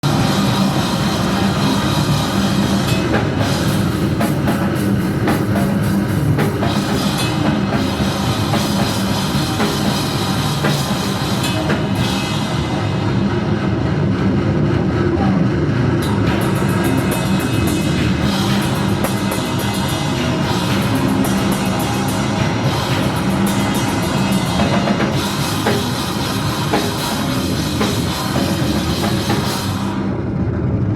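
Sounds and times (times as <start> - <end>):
drum and cymbal hits: 0.0 - 14.7, 16.0 - 30.2
live rock band: 0.0 - 14.7, 15.3 - 30.2.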